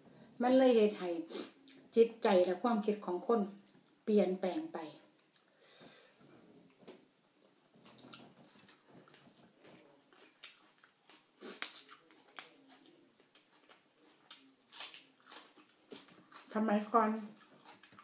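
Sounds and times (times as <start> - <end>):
person chewing: 5.2 - 5.5, 7.7 - 16.6, 17.2 - 18.0.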